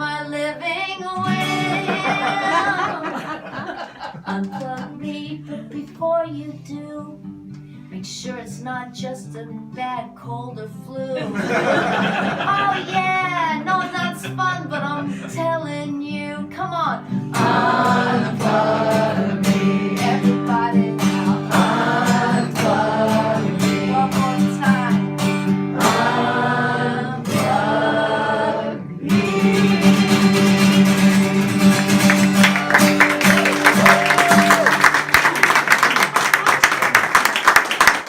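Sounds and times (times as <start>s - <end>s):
acoustic guitar strumming: 0.4s - 3.2s, 9.2s - 35.1s.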